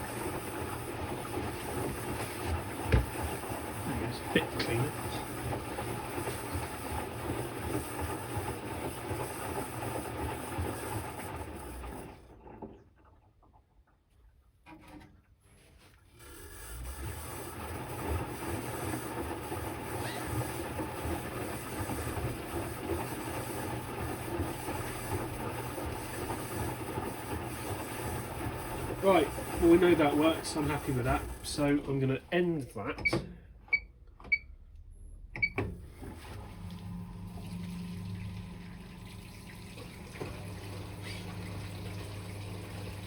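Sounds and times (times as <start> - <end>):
washing machine drum rumbling: 0.0 - 10.5.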